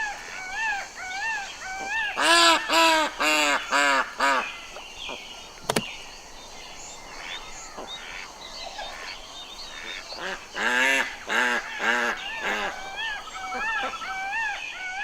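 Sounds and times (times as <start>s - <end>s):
waterfowl honking: 6.9s - 15.0s.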